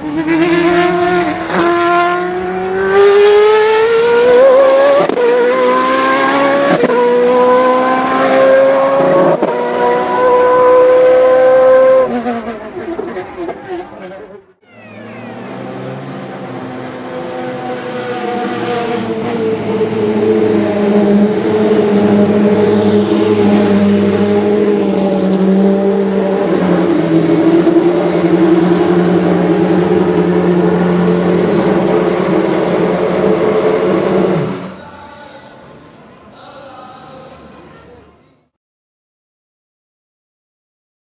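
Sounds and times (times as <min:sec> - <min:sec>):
race car engine running hard: 0:11.6 - 0:35.0.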